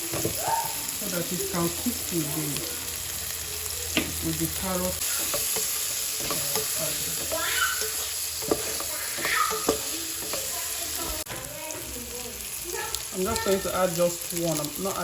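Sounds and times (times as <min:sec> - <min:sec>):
spoon knocking and scraping pan: 0:00.0 - 0:00.8, 0:03.9 - 0:11.9
vegetables sizzling in hot pan: 0:00.0 - 0:15.0.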